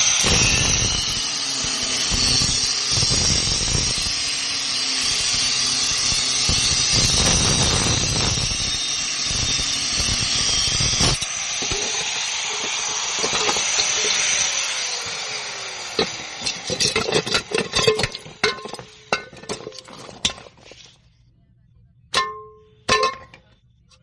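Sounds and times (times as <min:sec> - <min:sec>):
angle grinder cutting steel: 0:00.0 - 0:20.5
metal clanks and knocks: 0:16.0 - 0:20.8, 0:22.1 - 0:23.6.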